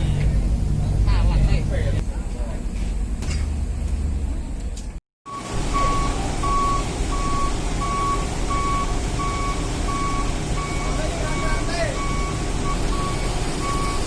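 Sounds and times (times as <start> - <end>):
low engine rumble: 0.0 - 14.0
reversing alarm beeping: 5.3 - 14.0.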